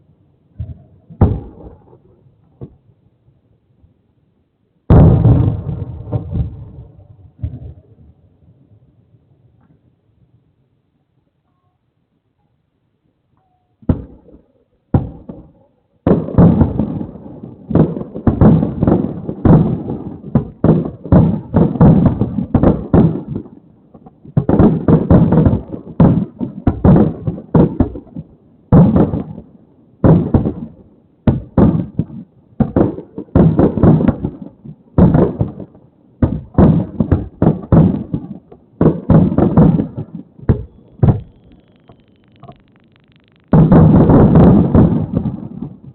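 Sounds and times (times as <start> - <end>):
fireworks booming: 0.5 - 2.9, 4.9 - 8.8, 13.8 - 45.9.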